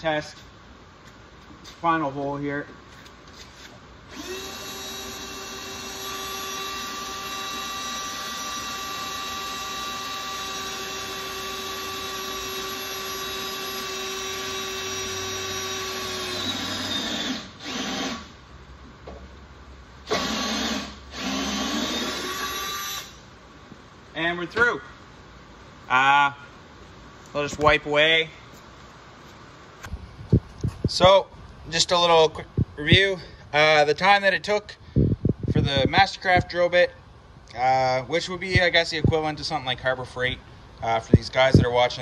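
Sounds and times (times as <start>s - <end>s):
cordless drill cutting steel: 4.1s - 18.3s, 20.1s - 23.2s.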